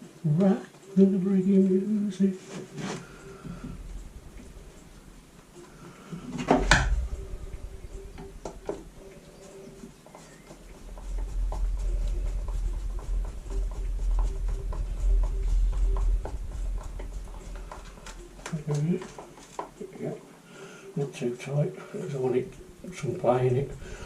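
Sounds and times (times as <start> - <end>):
low handling rumble: 3.0 - 19.8, 22.1 - 24.0.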